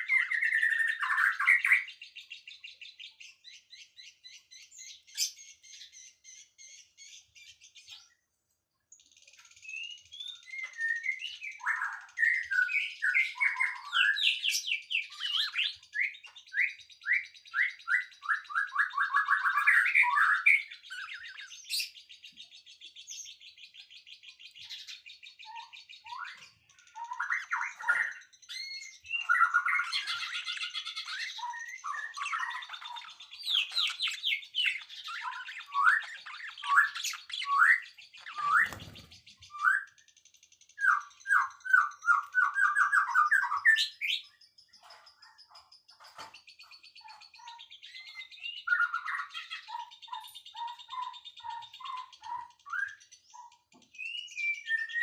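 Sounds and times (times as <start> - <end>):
birds chirping whistled notes: 0.0 - 55.0
high bird trilling: 24.6 - 40.0.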